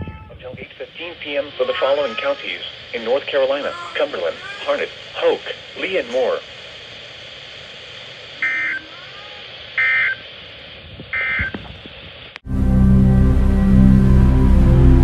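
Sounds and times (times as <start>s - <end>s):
broadcast hiss: 0.0s - 12.4s
alert data tone bursts: 8.4s - 9.0s, 9.8s - 10.2s, 11.1s - 11.6s
loud music: 12.4s - 15.0s.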